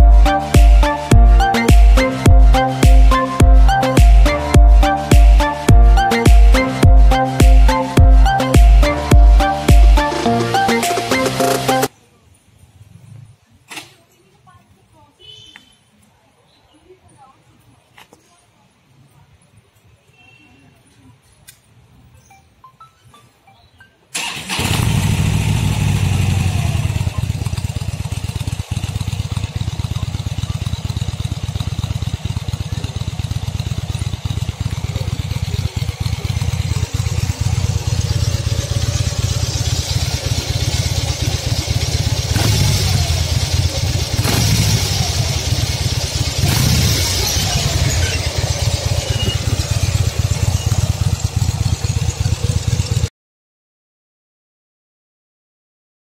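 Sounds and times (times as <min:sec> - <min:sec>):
motorcycle engine starting: 0:24.1 - 0:53.1
motorcycle engine revving: 0:24.2 - 0:53.1
motorcycle idling rumble: 0:24.3 - 0:53.1.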